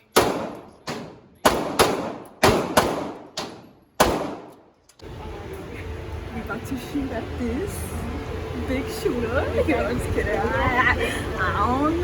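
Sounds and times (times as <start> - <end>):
echoing gunshots: 0.0 - 4.6.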